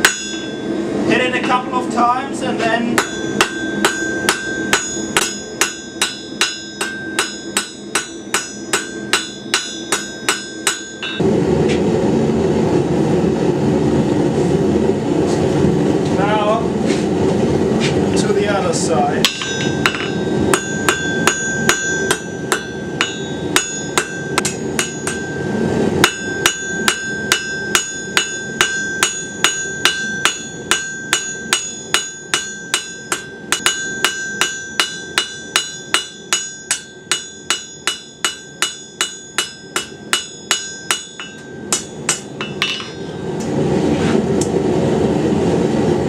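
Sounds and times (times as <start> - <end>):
hammer striking steel on anvil: 0.0 - 0.7, 3.0 - 11.2, 19.2 - 43.5
steady rushing noise: 0.0 - 46.0.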